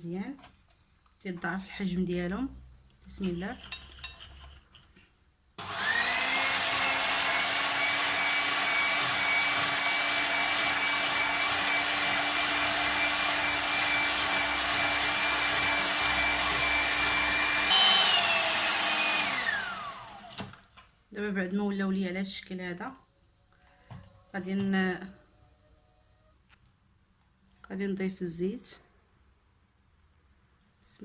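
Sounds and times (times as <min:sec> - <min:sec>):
electric mixer whining: 0:05.6 - 0:20.5.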